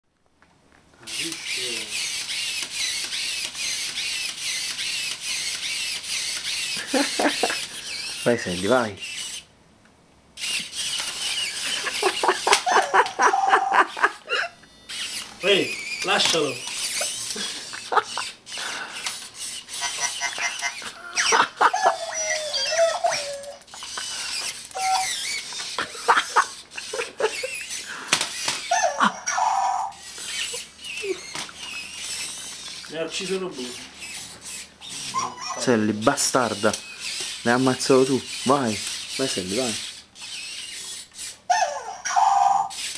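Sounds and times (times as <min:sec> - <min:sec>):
toy robot motors whirring: 0:01.0 - 0:09.5, 0:10.3 - 0:42.9.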